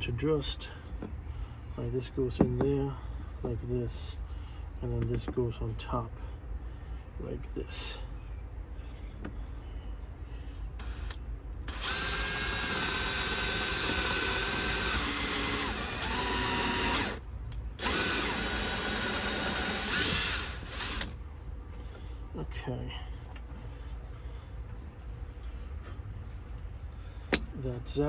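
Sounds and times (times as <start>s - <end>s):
electric drill whining: 10.8s - 17.2s, 17.8s - 21.2s.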